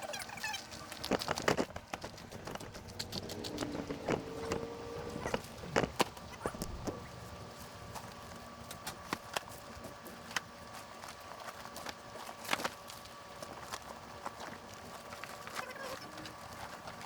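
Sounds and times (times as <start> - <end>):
footsteps on rock and gravel: 0.7 - 7.0.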